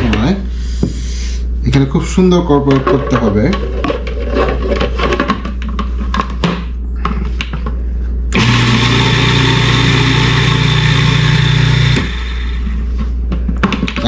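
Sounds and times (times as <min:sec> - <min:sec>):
food processor motor running: 0:08.4 - 0:12.8.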